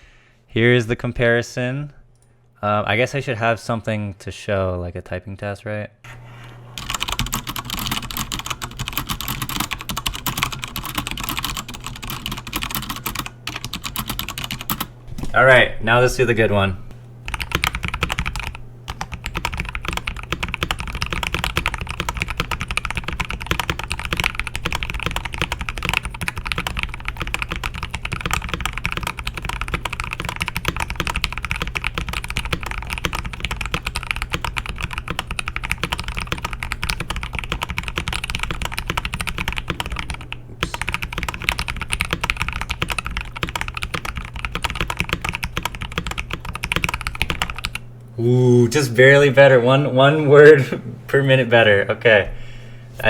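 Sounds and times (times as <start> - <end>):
fast mechanical keyboard typing: 6.8 - 14.9, 17.2 - 47.8.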